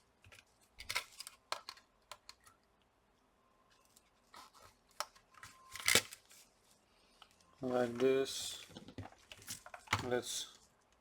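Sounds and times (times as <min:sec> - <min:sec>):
small plastic parts clicking: 0:00.2 - 0:02.5.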